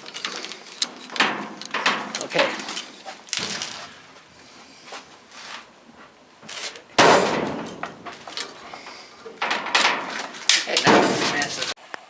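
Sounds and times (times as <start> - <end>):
small metal clanks: 0.0 - 4.1, 6.4 - 11.8
loud metal bang: 7.0 - 8.3, 10.8 - 11.8.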